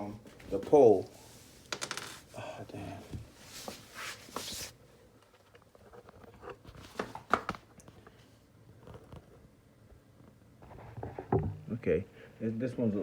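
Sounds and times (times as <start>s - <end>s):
furniture parts scraping and rustling: 0.3s - 4.8s.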